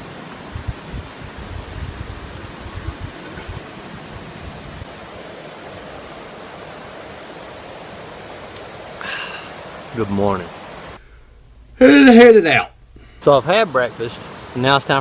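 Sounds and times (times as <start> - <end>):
waterfall rushing: 0.0 - 11.0, 11.8 - 15.0.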